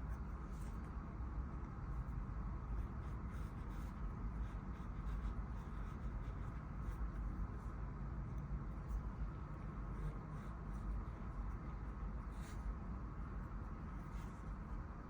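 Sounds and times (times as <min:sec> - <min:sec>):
steady low hum: 0:00.0 - 0:15.0
small brush scratchy strokes: 0:13.4 - 0:14.8.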